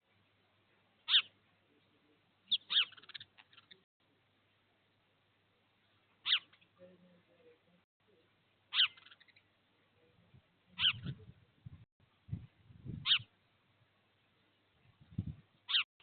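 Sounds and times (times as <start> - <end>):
small animal high-pitched calls: 1.0 - 1.3, 2.5 - 3.8, 6.2 - 6.6, 8.7 - 9.4, 10.8 - 11.2, 13.0 - 13.3, 15.7 - 15.9.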